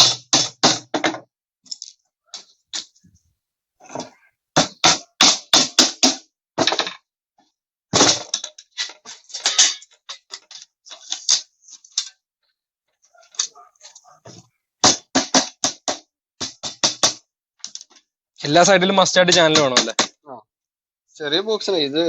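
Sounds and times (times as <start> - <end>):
plywood scraping: 3.8 - 4.8, 13.0 - 14.6.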